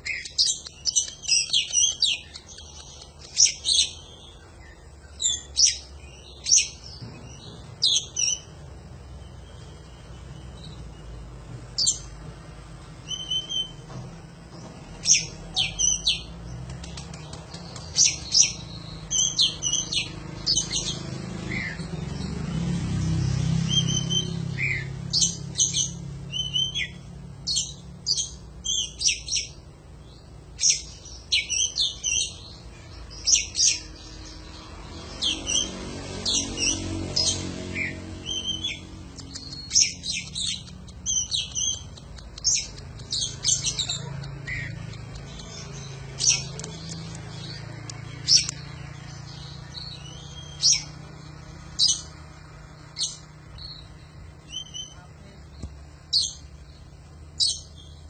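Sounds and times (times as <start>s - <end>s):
bird chirping and whistling: 5.1s - 8.5s, 13.0s - 13.8s, 15.0s - 16.3s, 17.7s - 21.9s, 23.7s - 29.6s, 33.2s - 34.4s, 35.2s - 44.7s, 49.7s - 51.0s, 53.0s - 55.0s.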